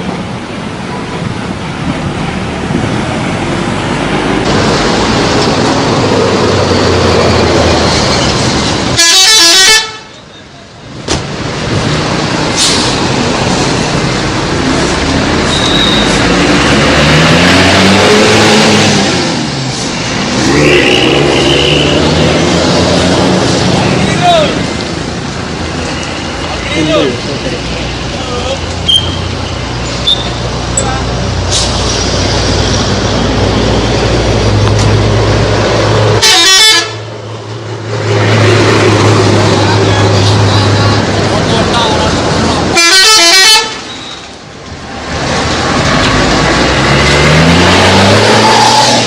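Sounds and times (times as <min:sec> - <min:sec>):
bus engine and road noise: 0:00.0 - 0:49.0
bus horn playing a tune: 0:09.0 - 0:10.2, 0:36.2 - 0:37.1, 0:42.7 - 0:43.9.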